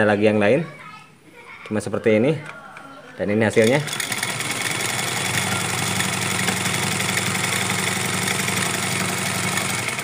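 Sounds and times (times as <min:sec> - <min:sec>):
sewing machine running: 0:03.5 - 0:10.0.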